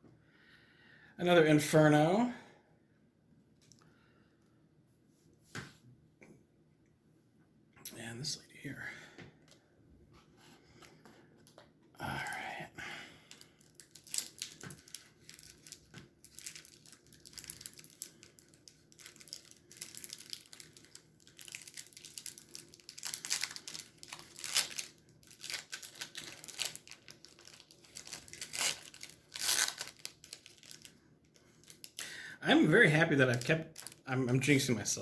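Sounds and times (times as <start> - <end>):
plastic wrapper tearing and crinkling: 13.3 - 32.1, 33.0 - 34.1.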